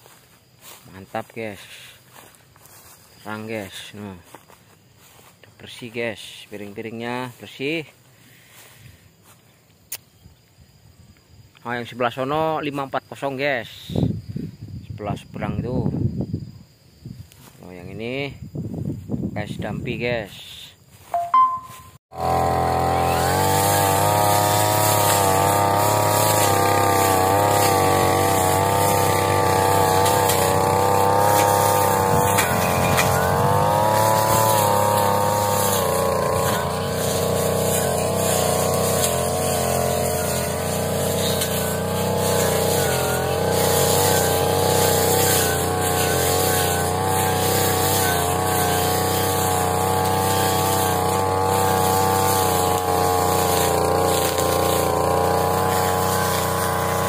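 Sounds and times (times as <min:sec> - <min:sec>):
brush cutter engine running: 0:00.0 - 0:09.4, 0:21.0 - 0:57.0.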